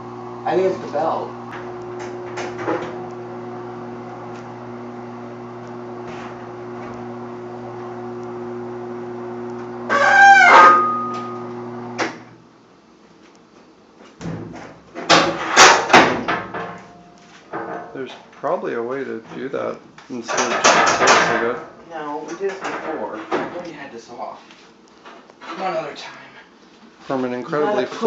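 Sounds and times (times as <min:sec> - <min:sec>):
washing machine motor humming: 0:00.0 - 0:12.4
loud short squeal: 0:09.9 - 0:11.4.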